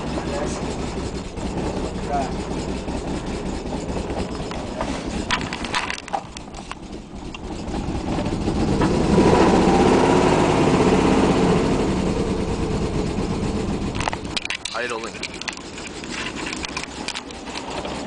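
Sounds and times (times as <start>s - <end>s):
car engine running unevenly: 0.0s - 18.0s.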